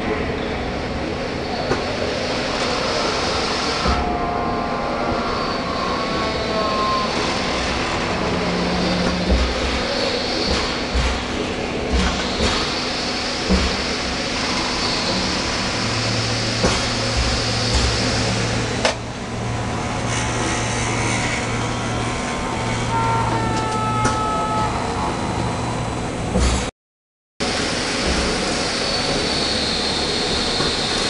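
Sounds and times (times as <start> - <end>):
machinery running: 0.0 - 26.7
two-tone whine: 1.4 - 11.1, 11.8 - 26.4
low motor hum: 13.5 - 26.4.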